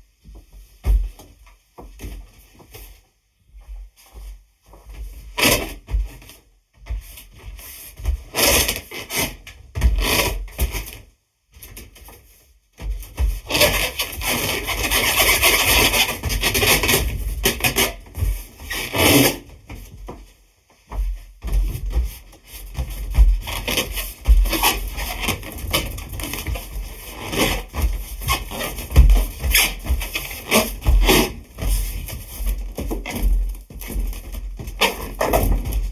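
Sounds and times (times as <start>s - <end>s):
rubber balloon squeaking: 27.1s - 31.4s.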